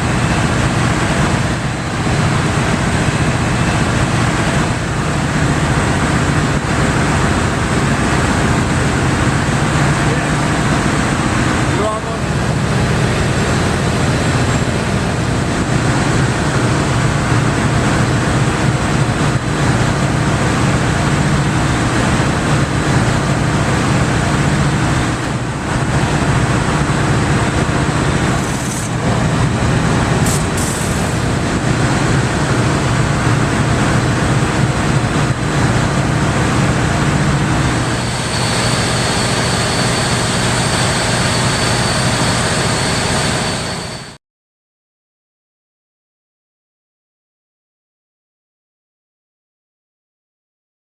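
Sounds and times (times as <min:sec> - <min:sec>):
gas engine and compressor drone: 0:00.0 - 0:44.2
faint high whine: 0:37.6 - 0:44.2.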